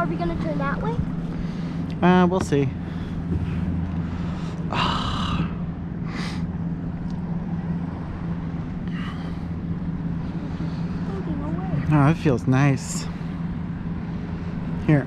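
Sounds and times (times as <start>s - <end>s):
boat motor humming: 0.0s - 15.0s
water: 0.0s - 15.0s
person breathing: 2.8s - 6.5s.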